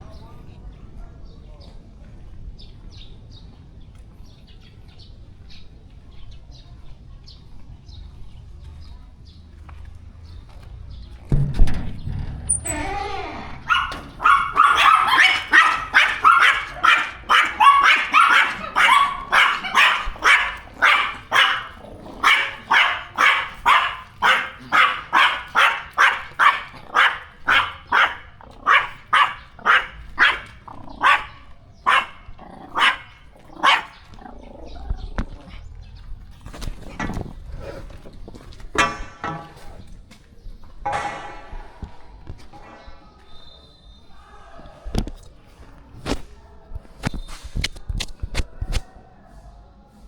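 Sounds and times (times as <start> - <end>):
dog barking: 13.6 - 35.1.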